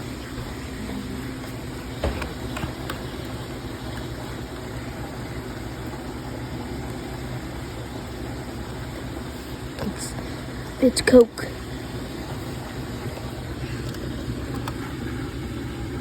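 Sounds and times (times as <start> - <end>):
low hum and hiss: 0.0 - 16.0.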